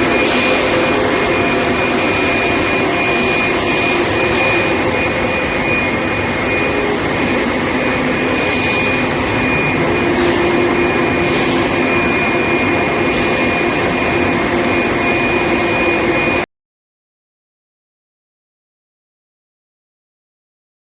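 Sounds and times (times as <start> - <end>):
industrial machine whine and hum: 0.0 - 16.5.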